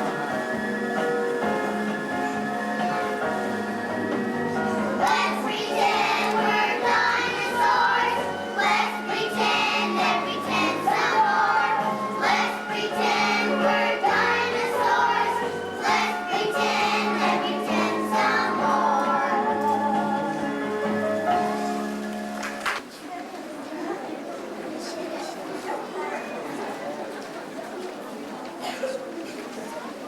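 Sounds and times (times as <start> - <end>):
children's choir singing: 0.0 - 22.1
musical accompaniment: 0.0 - 22.8.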